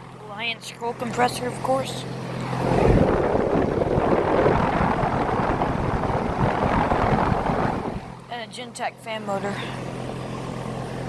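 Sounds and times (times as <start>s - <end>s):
condenser fan air rushing: 0.0s - 11.0s
air buffeting microphone: 0.8s - 8.4s.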